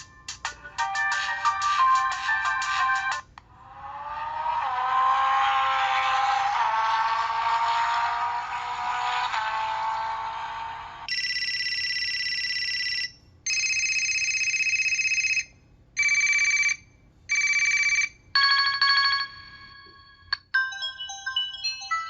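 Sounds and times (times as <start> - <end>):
quick electronic melody: 20.6 - 22.0.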